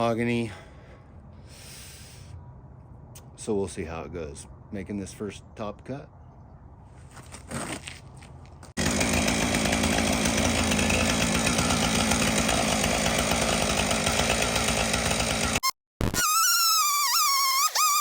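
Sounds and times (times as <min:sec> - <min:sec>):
chainsaw cutting log: 0:08.8 - 0:15.7
wavering whistle-like tone: 0:16.2 - 0:18.0.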